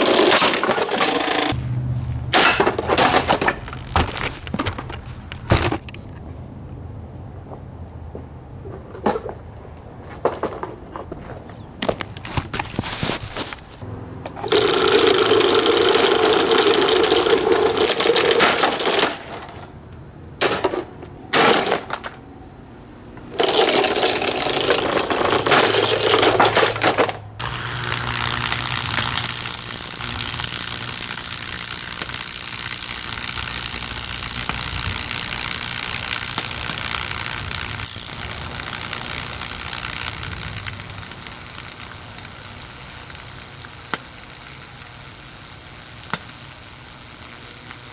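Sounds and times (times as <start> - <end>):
electric fan motor rattling: 0.0 - 6.0, 13.4 - 19.7, 23.3 - 47.9.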